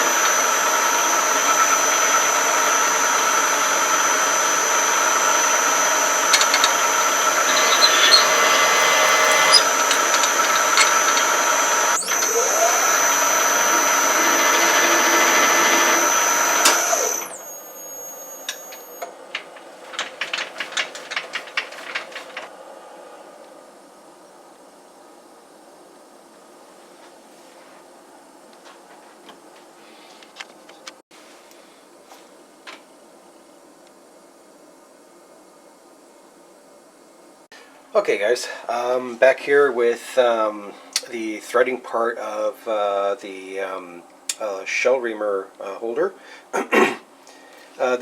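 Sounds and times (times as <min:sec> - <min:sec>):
power tool whining: 0:00.0 - 0:22.5.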